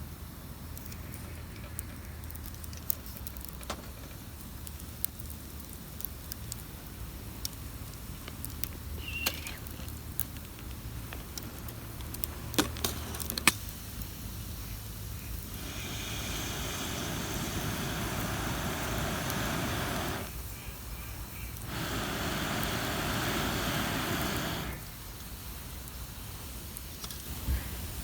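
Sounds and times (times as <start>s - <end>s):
campfire crackling: 0.0s - 28.0s.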